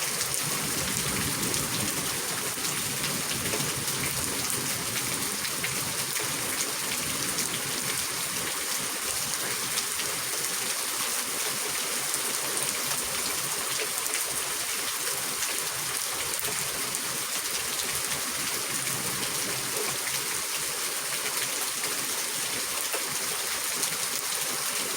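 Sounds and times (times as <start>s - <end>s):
steady rain hiss: 0.0s - 24.9s.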